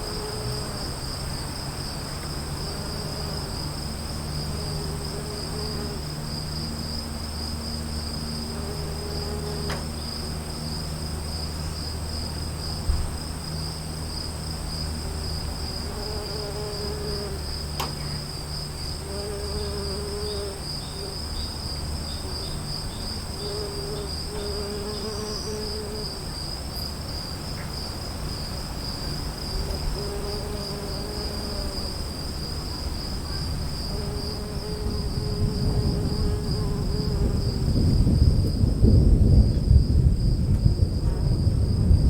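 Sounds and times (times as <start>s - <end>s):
crickets trilling: 0.0s - 42.0s
low wavering insect call: 0.0s - 42.0s
distant thunder rumble: 34.8s - 42.0s.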